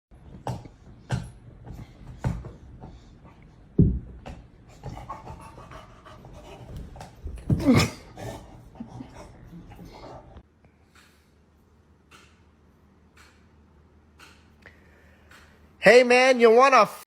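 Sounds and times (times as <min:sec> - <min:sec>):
dog panting: 0:00.5 - 0:10.4.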